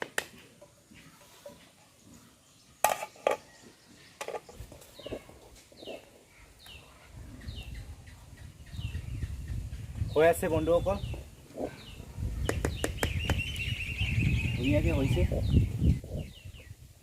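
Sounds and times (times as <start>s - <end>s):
bird chirping: 0.8s - 16.9s.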